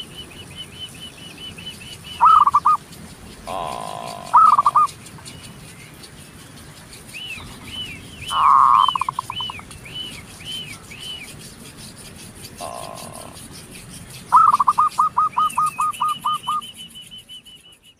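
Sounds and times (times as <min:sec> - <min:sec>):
bird song with fast trill: 0:00.0 - 0:17.9
bird calling short high notes: 0:03.5 - 0:04.9, 0:08.3 - 0:09.6.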